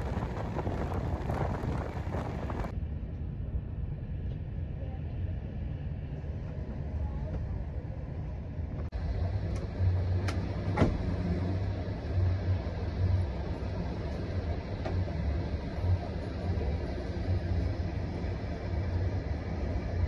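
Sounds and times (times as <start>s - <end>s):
train rumbling inside carriage: 0.0s - 20.0s.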